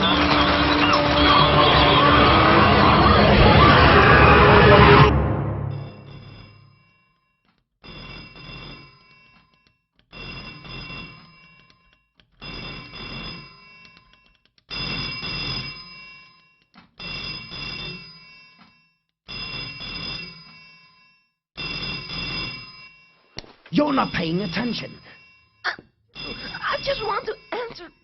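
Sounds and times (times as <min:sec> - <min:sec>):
telephone bell ringing: 0:00.0 - 0:05.1, 0:05.7 - 0:28.0.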